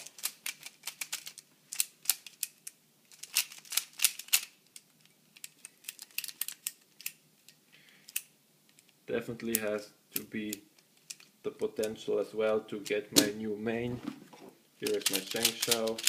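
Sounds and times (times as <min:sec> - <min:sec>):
plastic puzzle clicking: 0:00.0 - 0:08.9, 0:10.5 - 0:11.3, 0:14.8 - 0:16.0.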